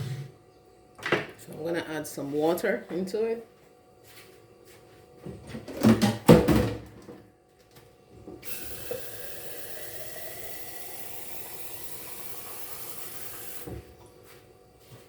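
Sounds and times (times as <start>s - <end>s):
water running into a blender jar: 8.4s - 13.7s.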